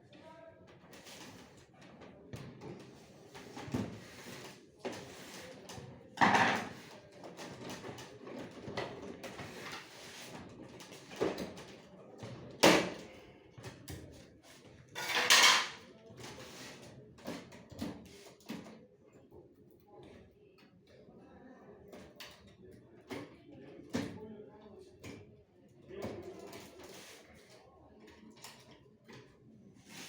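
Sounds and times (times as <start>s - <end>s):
clicks and knocks of hard objects: 6.2s - 9.9s, 15.0s - 16.4s.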